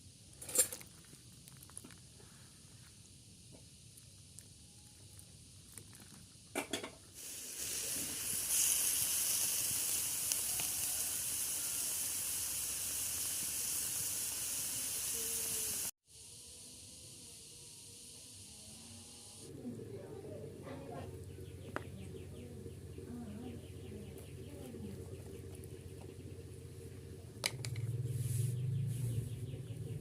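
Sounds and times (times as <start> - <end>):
food sizzling in hot oil: 6.3 - 16.0.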